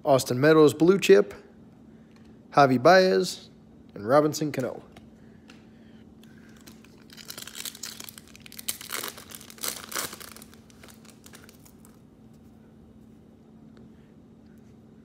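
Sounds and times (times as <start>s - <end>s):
wrapper crinkling: 6.4s - 12.0s
foil pack tearing: 6.6s - 12.0s.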